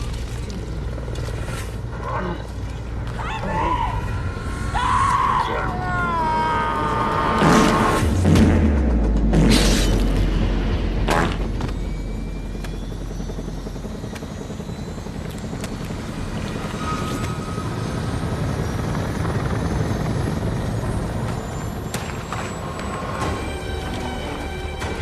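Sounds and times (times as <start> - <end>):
helicopter rotor and engine: 9.9 - 25.0.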